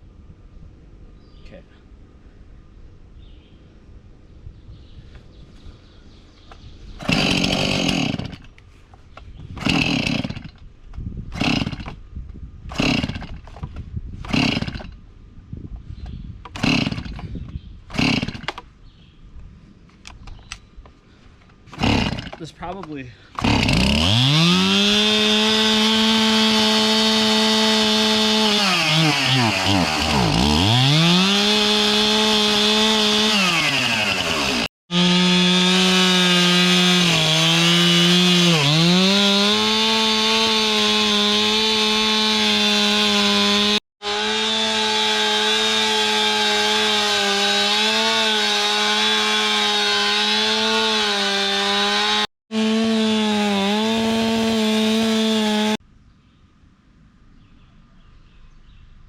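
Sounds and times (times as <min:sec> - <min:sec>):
chainsaw revving and cutting wood: 0:07.0 - 0:08.6, 0:09.6 - 0:10.6, 0:11.3 - 0:12.0, 0:12.7 - 0:15.0, 0:16.5 - 0:17.3, 0:17.9 - 0:18.6, 0:21.7 - 0:22.5, 0:23.3 - 0:55.8.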